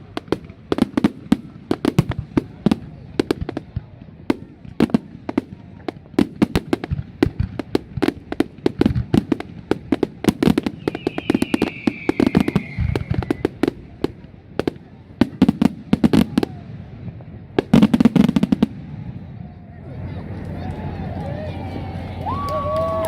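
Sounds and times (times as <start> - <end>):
deep fireworks booms: 0.0 - 19.7
fireworks bangs and crackles: 0.0 - 20.6
whistling firework: 10.0 - 14.2, 15.6 - 19.8, 20.8 - 23.0.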